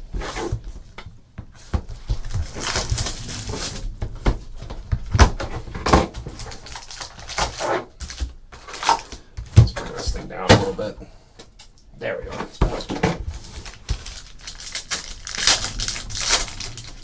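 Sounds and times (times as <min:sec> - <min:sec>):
wrapper rustling: 0:02.0 - 0:04.0, 0:06.2 - 0:09.2, 0:12.8 - 0:17.0.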